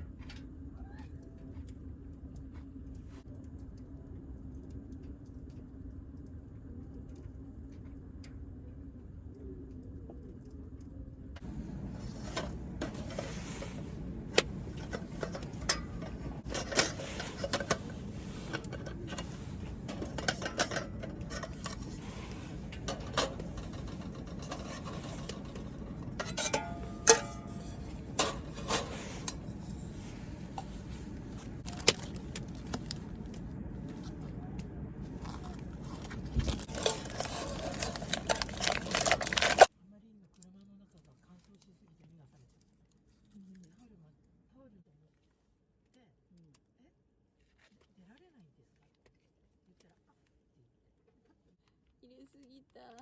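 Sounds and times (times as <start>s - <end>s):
steady low rumble: 1.3s - 39.7s
metal cookware clinking: 11.5s - 30.9s, 36.5s - 39.7s.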